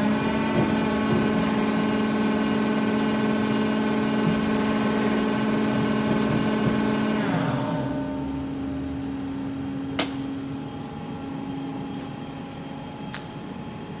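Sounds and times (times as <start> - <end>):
lathe spindle whine winding down: 0.0 - 8.6
machine low hum: 0.0 - 14.0.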